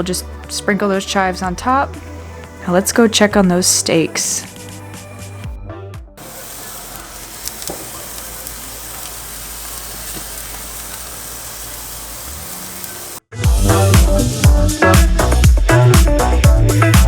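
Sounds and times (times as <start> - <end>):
steaks sizzling on a grill: 6.2 - 14.4
loud music with a beat: 13.3 - 17.0.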